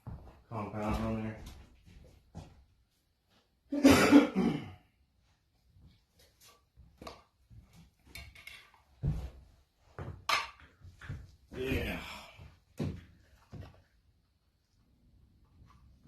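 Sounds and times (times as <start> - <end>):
person coughing: 3.7 - 4.8.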